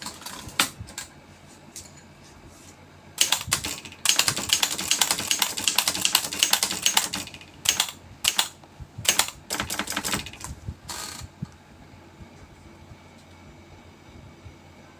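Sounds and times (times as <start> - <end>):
typewriter key strikes: 3.2 - 8.5.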